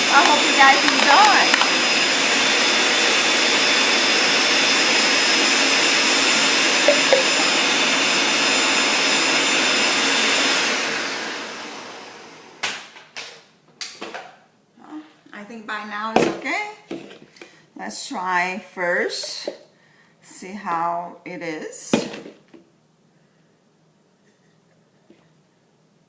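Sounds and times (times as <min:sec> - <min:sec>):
blender running: 0:00.0 - 0:12.6.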